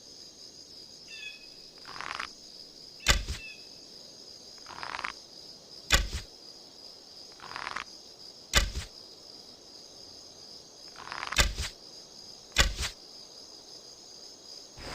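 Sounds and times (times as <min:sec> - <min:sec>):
high insect chirring: 0:00.0 - 0:14.9
arrow thwacks: 0:03.0 - 0:03.5, 0:05.9 - 0:06.3, 0:08.6 - 0:08.9, 0:11.4 - 0:11.8, 0:12.6 - 0:13.0.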